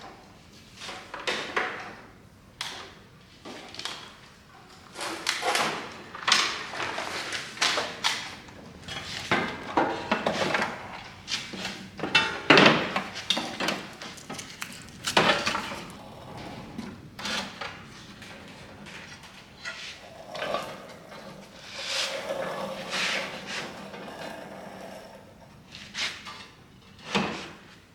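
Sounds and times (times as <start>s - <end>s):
metal clanks and scrapes: 4.9s - 24.3s.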